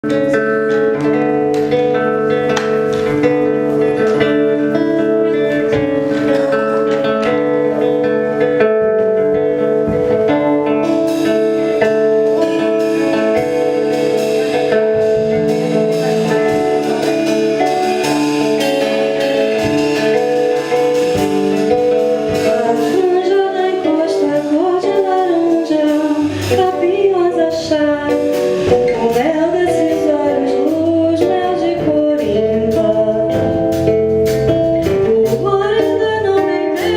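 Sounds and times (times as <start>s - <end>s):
acoustic band playing popular music: 0.0s - 36.9s
person singing: 10.3s - 33.9s, 34.8s - 36.9s.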